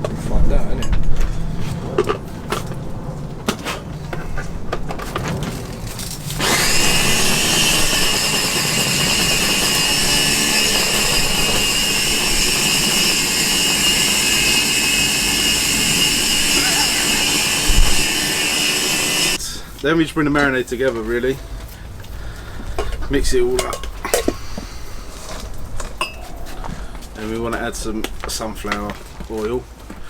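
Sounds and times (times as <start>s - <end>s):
electric blender running: 6.4s - 19.4s.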